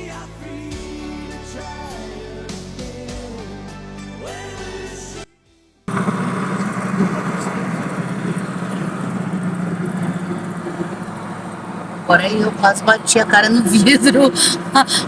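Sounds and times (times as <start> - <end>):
vehicle engine and road noise: 5.9 - 15.0.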